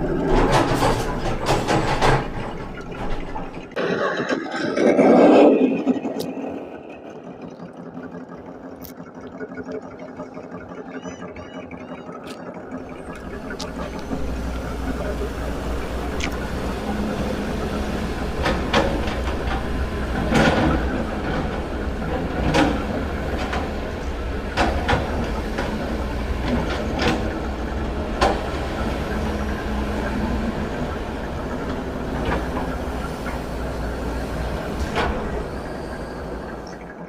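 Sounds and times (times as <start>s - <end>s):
clanks and knocks: 0.0s - 4.4s
vehicle low rumble: 0.0s - 37.0s.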